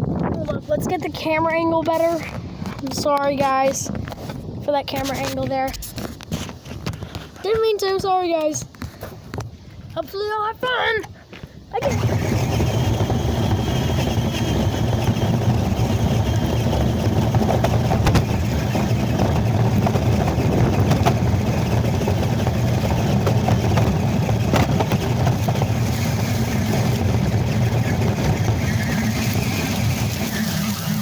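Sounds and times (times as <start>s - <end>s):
wind noise on microphone: 0.0s - 31.0s
rc car motor and tyres rumbling: 11.7s - 31.0s.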